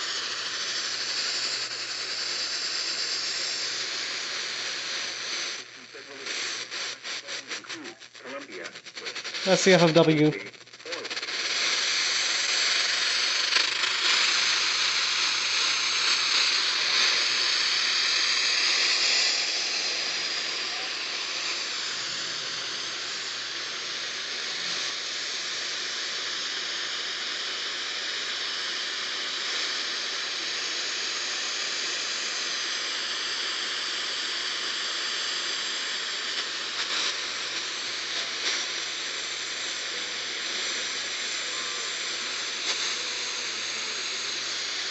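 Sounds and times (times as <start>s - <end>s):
small crackles: 0.0s - 29.7s, 34.8s - 44.9s
radio static hiss: 0.0s - 44.9s.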